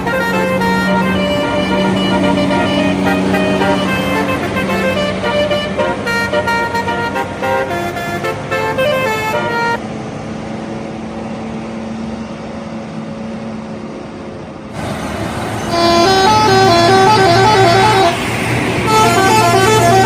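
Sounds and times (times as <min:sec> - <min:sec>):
bus horn playing a tune: 0:00.0 - 0:09.8, 0:15.5 - 0:20.0
engine and road noise: 0:00.0 - 0:20.0.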